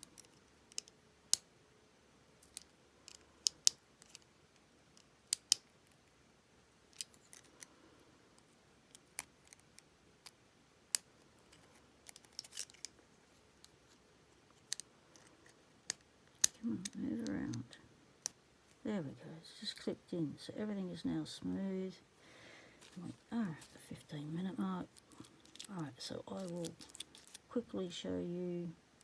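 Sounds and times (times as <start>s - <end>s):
metal tool clicking on padlock: 0.0s - 1.5s, 5.0s - 5.7s.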